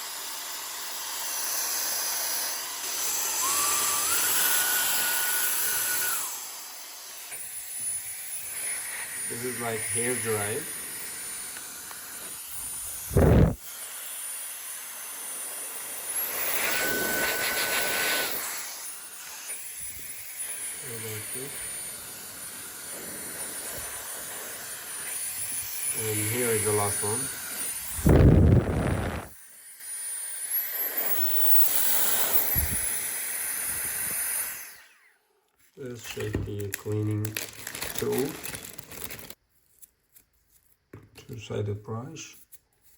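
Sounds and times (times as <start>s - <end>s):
air duster fan whine: 3.0s - 6.6s, 8.5s - 13.6s, 16.1s - 29.3s
low-pitched burst: 13.1s - 13.6s, 28.0s - 29.3s.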